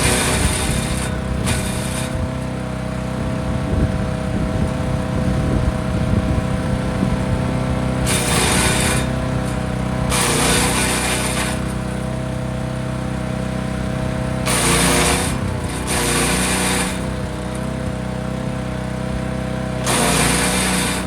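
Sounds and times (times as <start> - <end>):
wood chipper engine running: 0.0 - 21.0
branches crunching and shredding: 8.0 - 12.5, 13.8 - 18.0.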